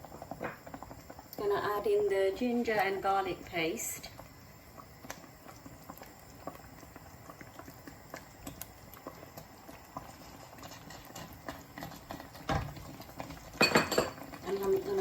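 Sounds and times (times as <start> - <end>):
onion paste frying in a pan: 0.0 - 15.0.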